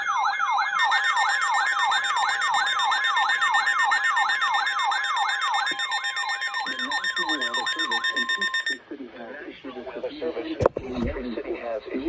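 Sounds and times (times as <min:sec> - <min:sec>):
weather radio electronic alarm: 0:00.0 - 0:08.9, 0:10.6 - 0:11.2.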